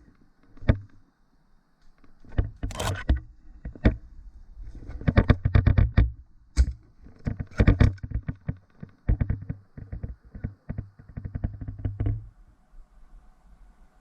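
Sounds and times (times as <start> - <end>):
gearbox motor hum: 2.7 - 3.2.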